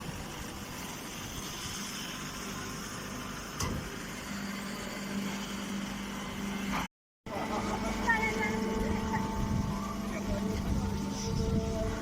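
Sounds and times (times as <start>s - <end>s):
machinery running: 0.1s - 12.0s
low steady hum: 7.3s - 12.0s.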